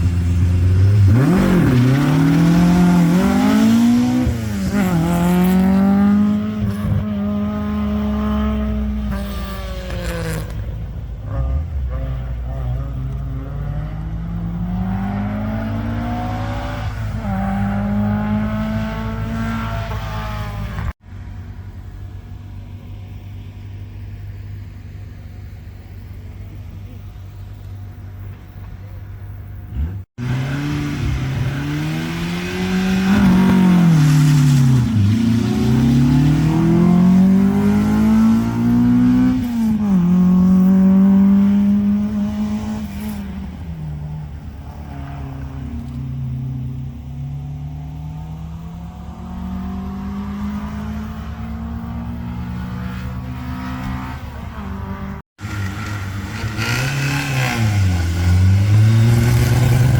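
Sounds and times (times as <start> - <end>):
rally car engine revving: 0.0 - 21.0, 29.6 - 59.9
low steady engine note: 21.0 - 29.8.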